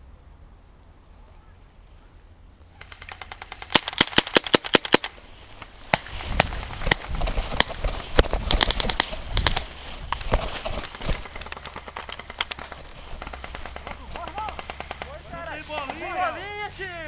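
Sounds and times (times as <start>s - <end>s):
airsoft guns firing: 2.8s - 16.3s.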